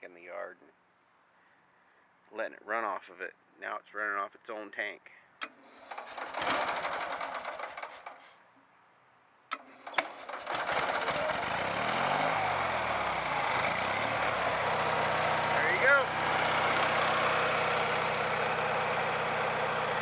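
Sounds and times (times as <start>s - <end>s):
generator engine cranking: 5.4s - 8.3s, 9.5s - 20.0s
starter clicking: 5.4s - 8.3s, 9.5s - 20.0s
engine running steadily: 9.9s - 20.0s.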